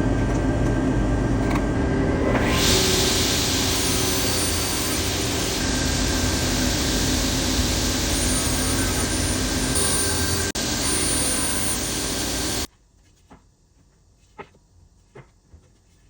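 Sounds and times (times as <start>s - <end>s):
power tool rushing hiss: 2.4s - 12.7s.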